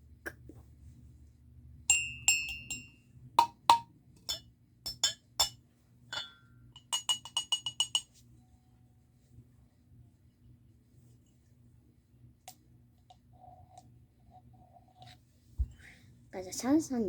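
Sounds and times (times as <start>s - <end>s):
cups clinking when tapped: 1.9s - 8.2s.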